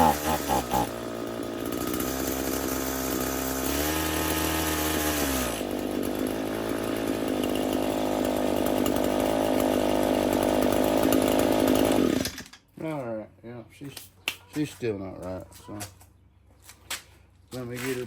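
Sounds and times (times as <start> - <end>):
string trimmer engine revving: 0.0 - 12.6.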